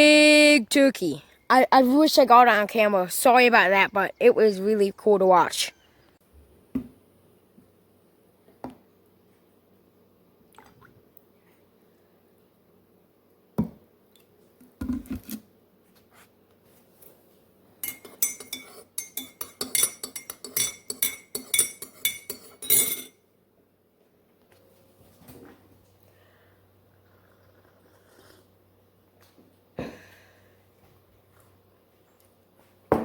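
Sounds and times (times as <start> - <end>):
dishware and utensils clinking: 17.8 - 23.2.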